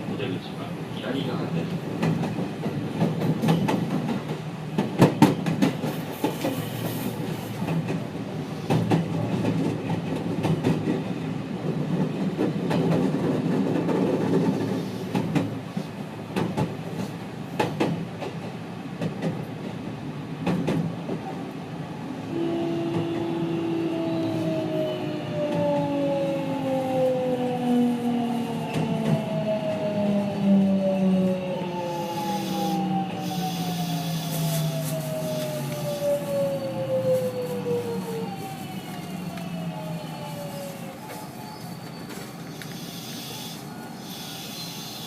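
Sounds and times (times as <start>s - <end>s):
train rumble: 0.0s - 45.0s.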